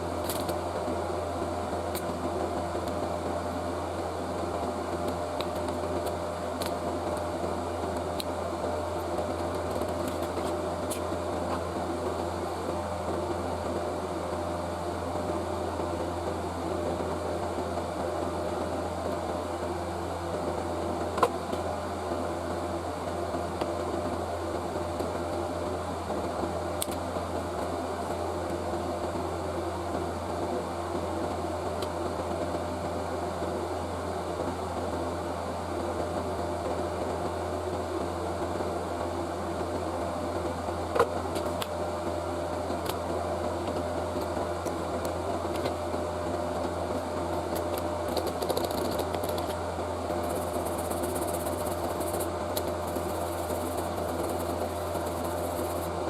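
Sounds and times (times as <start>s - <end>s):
electric fan whirring: 0.0s - 56.0s
fan clicks: 0.2s - 0.6s, 5.1s - 7.3s, 9.0s - 11.6s, 26.8s - 27.0s, 43.6s - 45.8s, 47.3s - 49.6s.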